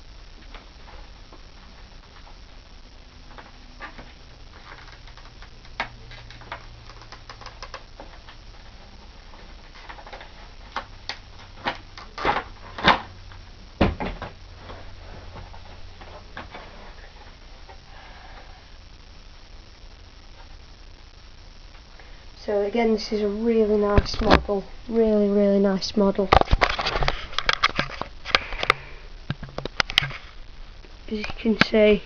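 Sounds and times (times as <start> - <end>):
packaging crinkling and clicking: 3.3 - 8.4.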